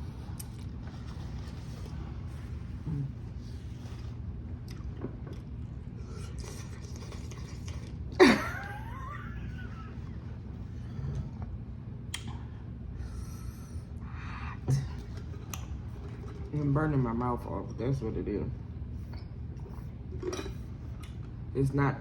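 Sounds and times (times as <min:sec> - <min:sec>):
chewing noodles: 0:00.0 - 0:08.2
slurping noodles: 0:05.9 - 0:08.1.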